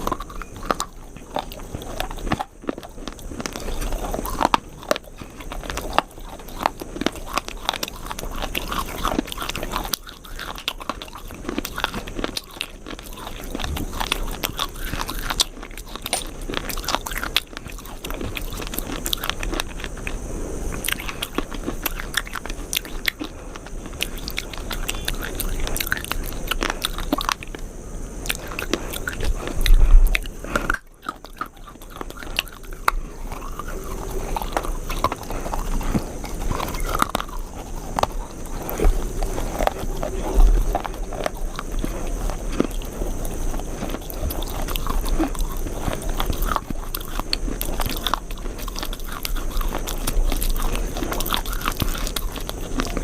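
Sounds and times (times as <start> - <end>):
crunchy chewing: 0.0 - 53.0.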